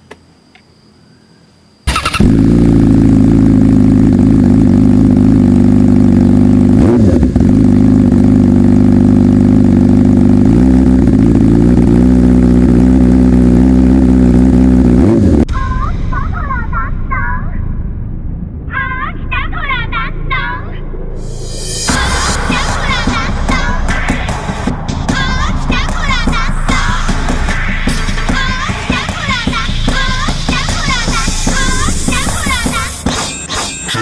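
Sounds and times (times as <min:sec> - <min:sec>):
motorcycle engine idling and revving: 0:01.9 - 0:15.5, 0:22.1 - 0:33.1.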